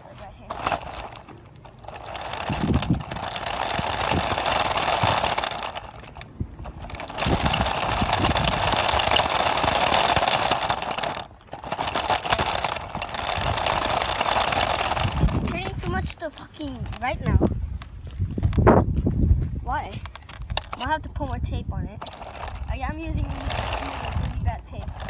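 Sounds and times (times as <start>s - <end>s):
rc car electric motor and gears: 0.2s - 17.4s, 20.1s - 25.0s.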